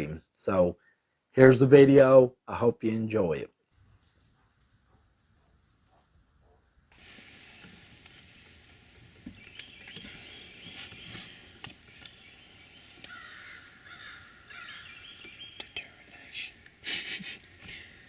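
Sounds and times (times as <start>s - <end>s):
steady background hiss: 3.1s - 18.0s
bird calls: 4.3s - 18.0s
small clicks and crackles: 7.0s - 14.2s
crow-like calling: 13.1s - 15.8s.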